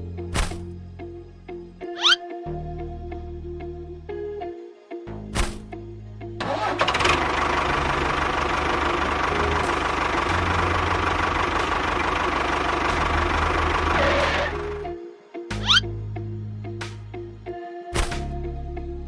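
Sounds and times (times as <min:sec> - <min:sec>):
engine starting and running: 0:06.4 - 0:14.9.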